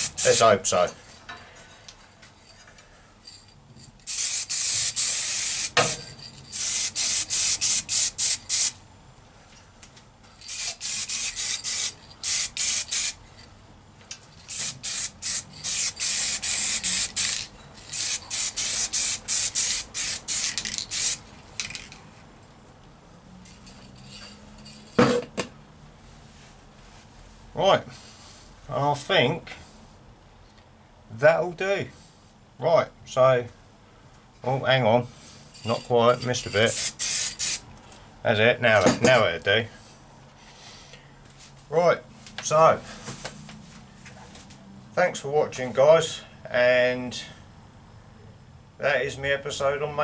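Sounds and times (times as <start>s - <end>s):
aerosol spray can hissing: 0.0s - 0.4s, 4.1s - 8.8s, 10.4s - 13.2s, 14.5s - 21.2s, 36.7s - 37.6s.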